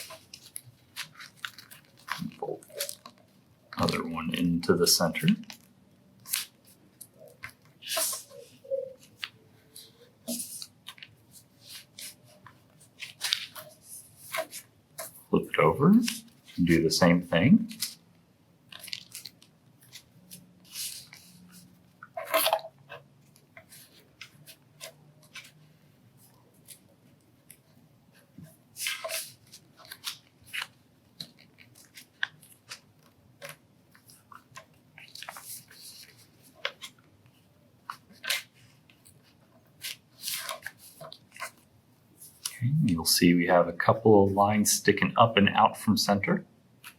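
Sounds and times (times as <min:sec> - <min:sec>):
paper being folded: 0:00.0 - 0:18.0, 0:18.6 - 0:42.6.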